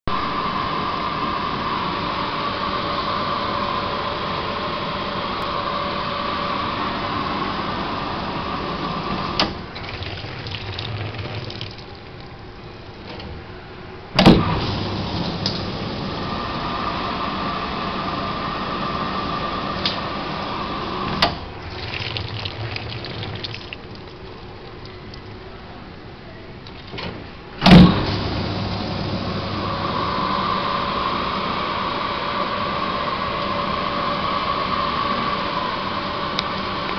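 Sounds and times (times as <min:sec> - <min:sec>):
water trickling and dripping: 0:09.8 - 0:12.4, 0:21.6 - 0:25.4
dishwasher water spraying: 0:21.5 - 0:24.8.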